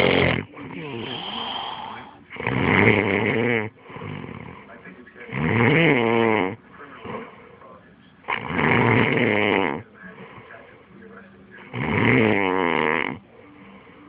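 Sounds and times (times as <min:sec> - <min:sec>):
person snoring: 0:00.0 - 0:04.6, 0:05.3 - 0:07.4, 0:08.3 - 0:10.5, 0:11.7 - 0:14.0.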